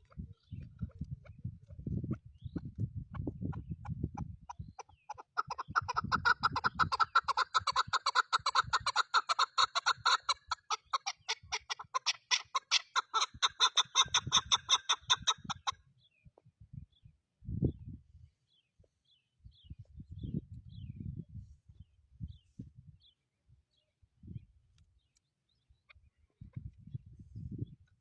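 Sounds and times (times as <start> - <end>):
partridge clucking calls: 0.0 - 15.8.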